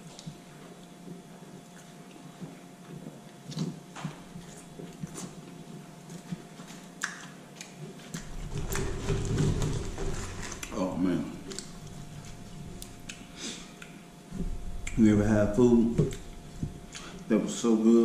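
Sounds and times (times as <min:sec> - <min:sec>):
wet chewing clicks and smacks: 0:00.0 - 0:08.9, 0:11.4 - 0:14.0
faint steady hum: 0:00.0 - 0:18.0
loud low sound: 0:14.3 - 0:17.0.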